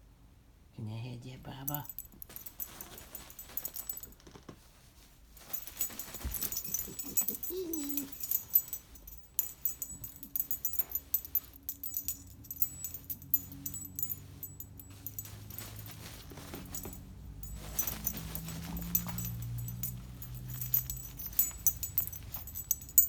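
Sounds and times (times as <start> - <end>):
jingling and clicking: 1.6 - 4.2, 5.4 - 23.0
low steady rumble: 5.4 - 23.0.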